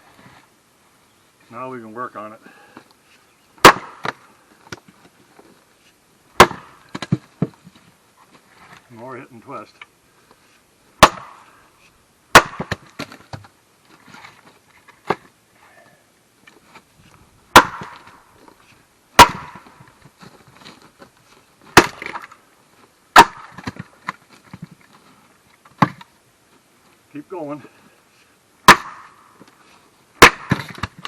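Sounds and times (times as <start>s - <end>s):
axe striking firewood: 3.6s - 4.8s, 6.4s - 7.6s, 11.0s - 11.4s, 12.3s - 13.4s, 17.5s - 18.2s, 19.2s - 19.8s, 21.7s - 22.4s, 23.1s - 24.6s, 25.8s - 26.0s, 28.6s - 29.2s, 30.2s - 31.0s.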